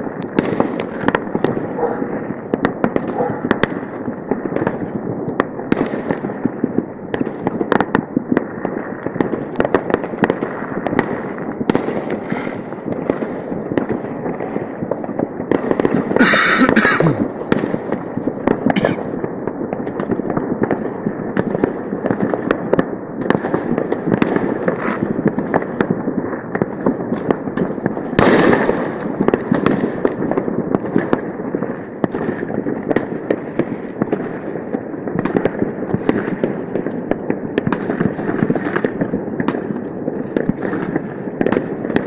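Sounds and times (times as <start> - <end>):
fireworks bangs and pops: 0.0 - 42.0.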